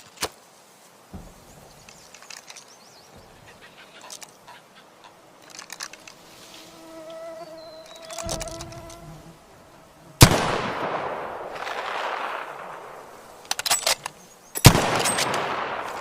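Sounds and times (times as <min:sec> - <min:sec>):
rifle metallic clicks and rattles: 0:01.8 - 0:02.8, 0:05.4 - 0:06.2, 0:13.4 - 0:16.0.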